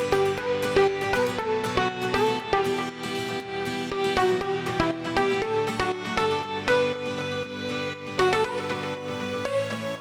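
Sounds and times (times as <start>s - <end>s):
plucked-string melody: 0.0s - 10.0s.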